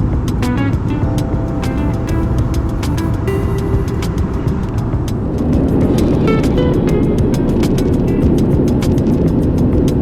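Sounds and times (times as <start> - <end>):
music with fast heavy beat: 0.0 - 10.0.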